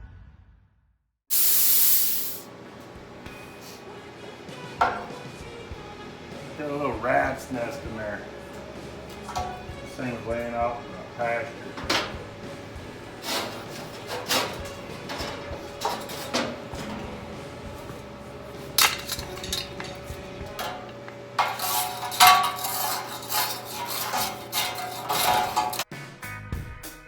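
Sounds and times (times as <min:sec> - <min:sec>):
metal pieces clanking together: 0:08.5 - 0:09.8, 0:11.7 - 0:25.8.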